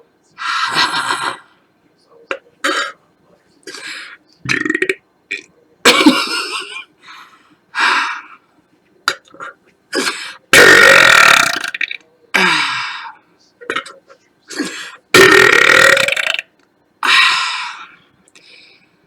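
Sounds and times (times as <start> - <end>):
woman burping: 4.5 - 5.0, 10.0 - 12.8, 14.6 - 16.4.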